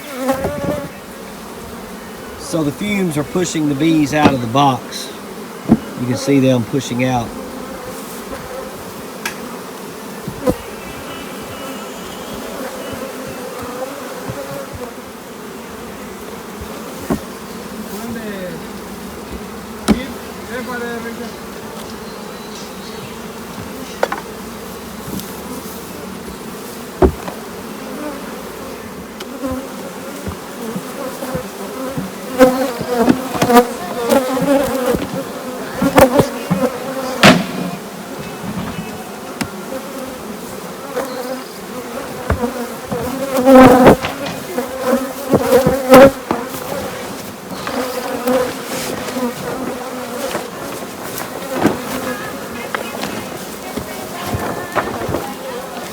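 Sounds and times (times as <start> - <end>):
honeybees buzzing: 0.0 - 55.9
sharp knocks: 4.1 - 4.6, 19.8 - 20.2, 27.0 - 27.4, 34.4 - 39.6.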